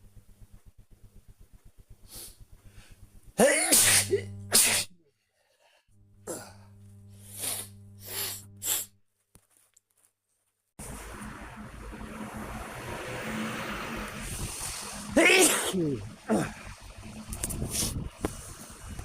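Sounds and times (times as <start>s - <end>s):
low steady hum: 0.0s - 4.8s, 5.9s - 8.8s, 10.8s - 19.0s
person sneezing: 3.4s - 5.0s, 7.3s - 8.9s, 15.1s - 16.5s
short bursts of noise: 6.2s - 8.9s.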